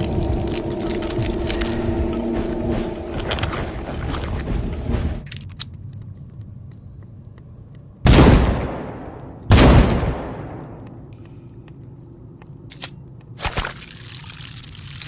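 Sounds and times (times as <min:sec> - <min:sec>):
rifle shots: 0:08.1 - 0:10.6.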